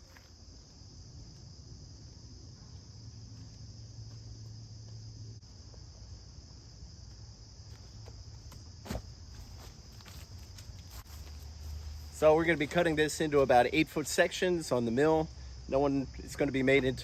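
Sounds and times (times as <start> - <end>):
insects buzzing: 0.0 - 17.0.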